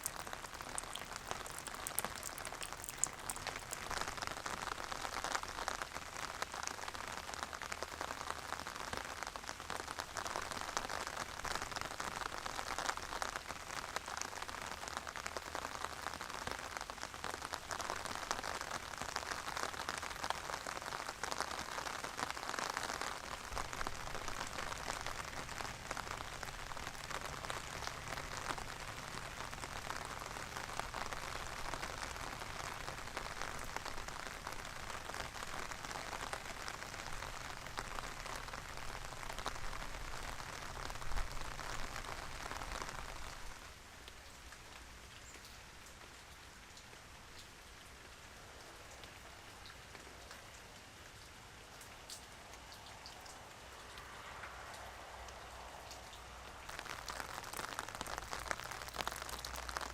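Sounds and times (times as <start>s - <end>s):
single water drips: 0.0s - 4.2s
rain patter: 0.0s - 59.9s.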